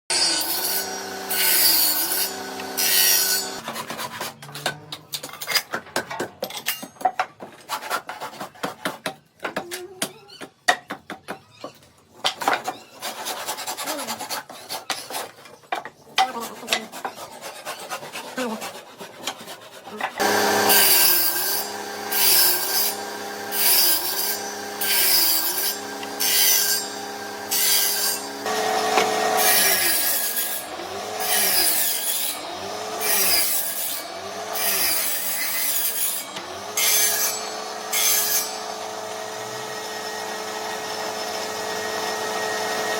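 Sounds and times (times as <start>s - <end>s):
woodworking machine cutting wood: 0.1s - 3.6s, 20.0s - 42.9s.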